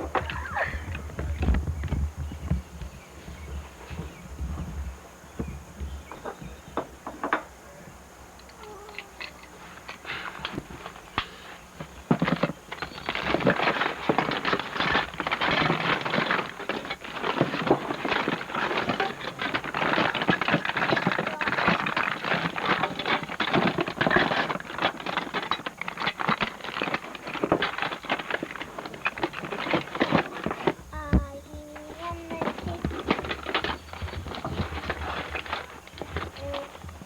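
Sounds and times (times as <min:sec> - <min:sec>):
electronic parts rattling in box: 0:11.8 - 0:37.0.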